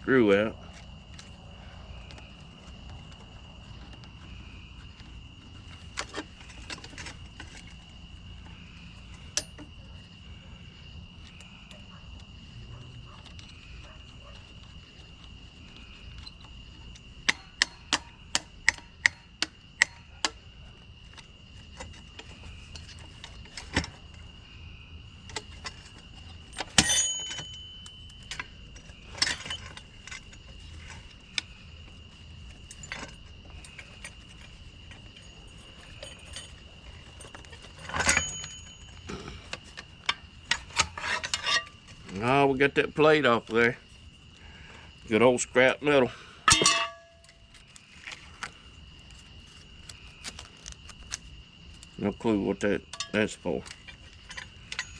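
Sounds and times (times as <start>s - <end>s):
night insects droning: 0.0s - 54.9s
metal parts clinking and knocking: 9.0s - 9.8s, 25.3s - 31.5s, 32.4s - 42.4s, 46.4s - 48.4s, 52.9s - 54.9s.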